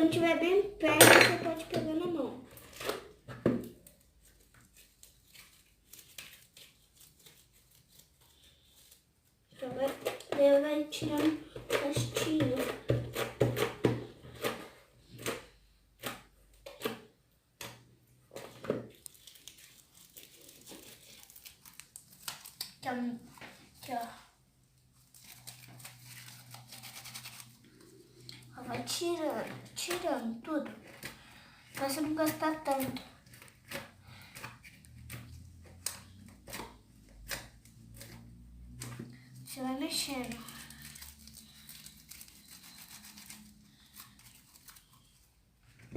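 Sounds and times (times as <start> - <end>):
slime stirred and scraped: 0.0 - 45.9
spoon scraping plastic pot: 9.6 - 17.1, 28.7 - 38.2.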